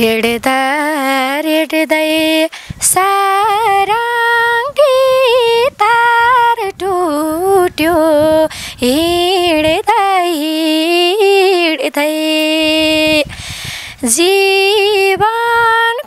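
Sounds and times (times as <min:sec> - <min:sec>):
woman singing unaccompanied: 0:00.0 - 0:16.0
woman breathing in: 0:02.5 - 0:02.8, 0:08.5 - 0:08.8, 0:13.3 - 0:14.0.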